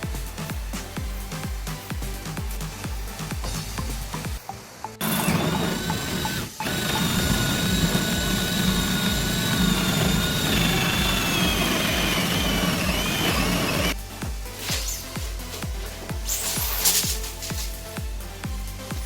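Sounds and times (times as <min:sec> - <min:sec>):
power tool motor whining: 0:05.0 - 0:14.0.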